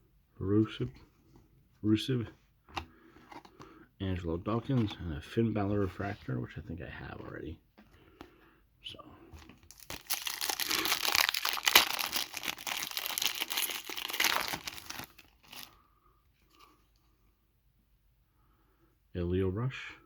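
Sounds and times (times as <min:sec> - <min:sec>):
faint handling sounds: 0:00.6 - 0:08.4
wrapper tearing and crinkling: 0:09.6 - 0:15.7.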